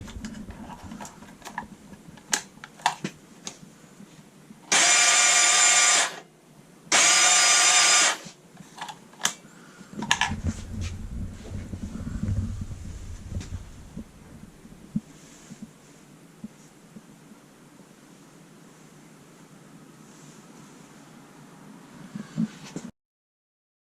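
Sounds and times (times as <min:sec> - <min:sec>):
electric starter motor whirring: 0:04.7 - 0:06.2, 0:06.9 - 0:08.2.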